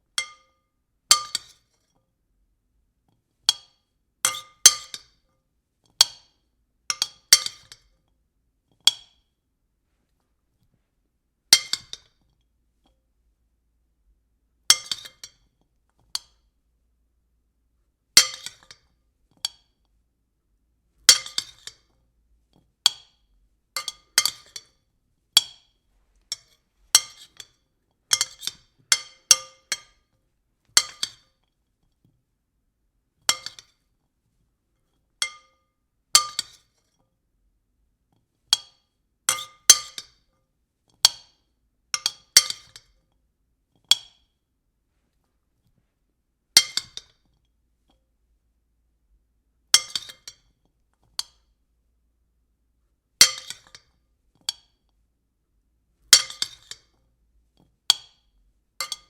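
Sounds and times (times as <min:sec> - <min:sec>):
spoon tapping on a bowl: 0:00.2 - 0:01.4, 0:23.8 - 0:24.7, 0:35.2 - 0:35.6.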